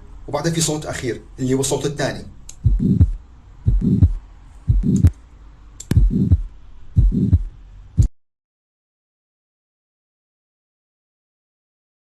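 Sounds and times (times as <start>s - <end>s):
heartbeat with blowing whoosh: 2.6s - 5.2s, 5.9s - 8.1s.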